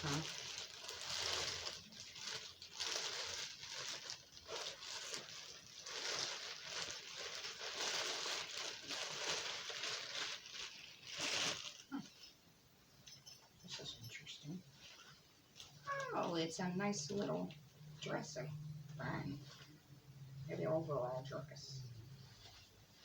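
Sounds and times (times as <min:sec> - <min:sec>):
gift packaging rustling: 0:00.0 - 0:12.4, 0:14.7 - 0:19.8.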